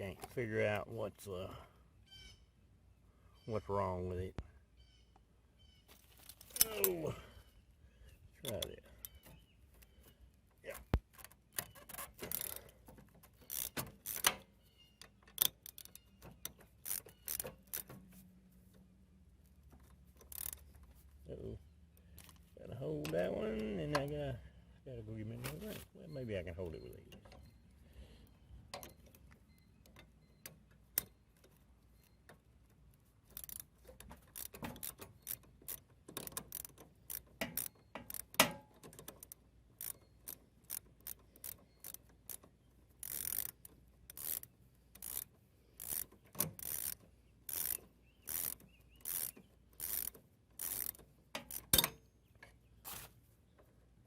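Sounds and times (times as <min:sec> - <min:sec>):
ratchet wrench clicking: 0:11.1 - 0:18.1, 0:19.7 - 0:20.9, 0:33.2 - 0:51.9.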